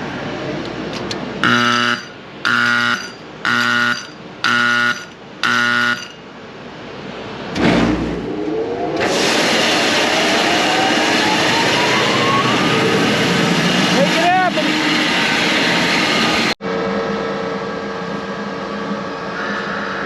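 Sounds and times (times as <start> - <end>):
dryer fan rushing and whining: 0.0 - 20.0
warning horn beeps: 1.4 - 6.2.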